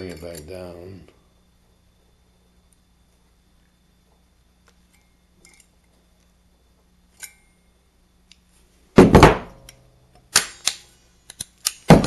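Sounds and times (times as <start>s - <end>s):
pliers clicking on metal rod: 9.6s - 11.9s.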